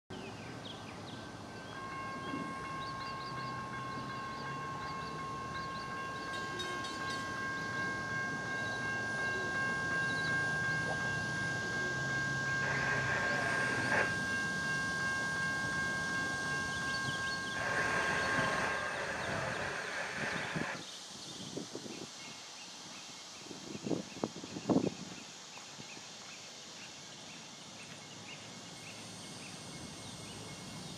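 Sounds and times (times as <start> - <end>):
locomotive air horn chord: 1.7 - 20.8.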